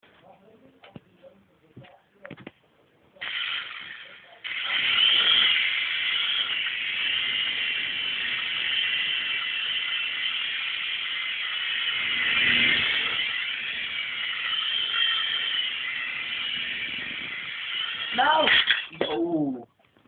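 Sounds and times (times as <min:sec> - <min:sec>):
rc helicopter motor whine: 0:03.3 - 0:18.9.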